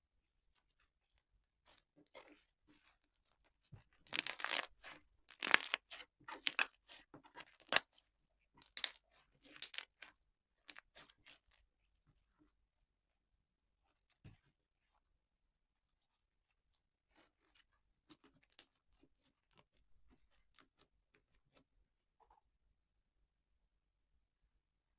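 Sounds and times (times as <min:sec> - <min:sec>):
slime sticky crackling: 0:04.1 - 0:04.7, 0:05.3 - 0:05.8, 0:09.6 - 0:09.8.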